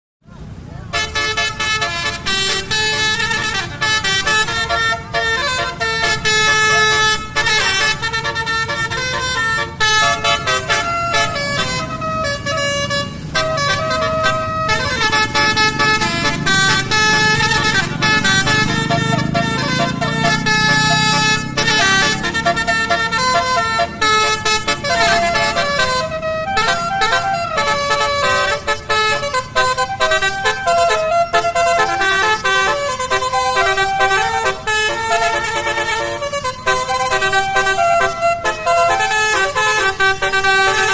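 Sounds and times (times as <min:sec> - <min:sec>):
musical vehicle horn tune: 0:00.9 - 0:40.9.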